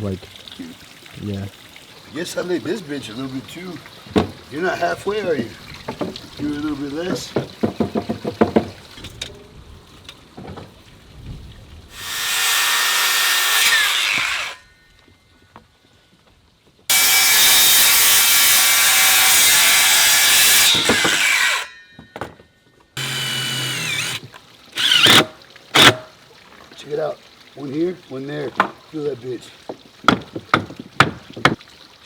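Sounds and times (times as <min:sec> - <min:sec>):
power saw cutting wood: 0:12.0 - 0:14.6, 0:16.9 - 0:21.8, 0:23.0 - 0:26.1.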